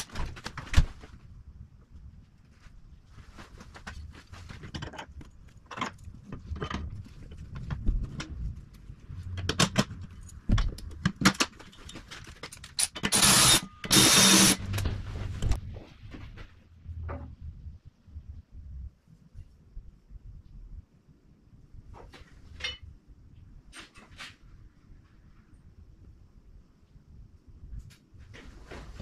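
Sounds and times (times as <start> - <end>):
tools and metal parts clattering: 9.4 - 15.6
loud noisy bursts: 13.1 - 14.9.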